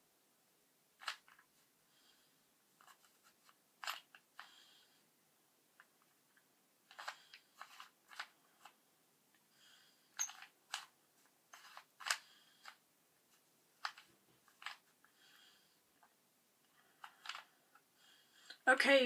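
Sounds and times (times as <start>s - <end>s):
plastic puzzle cube clicks: 1.0s - 1.4s, 6.9s - 8.8s, 11.6s - 12.8s, 13.8s - 14.9s, 17.0s - 17.5s.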